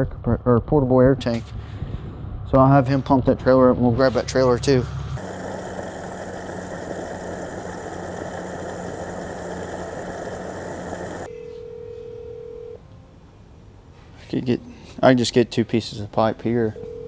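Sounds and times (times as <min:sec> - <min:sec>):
vehicle running hum: 0:03.8 - 0:11.3.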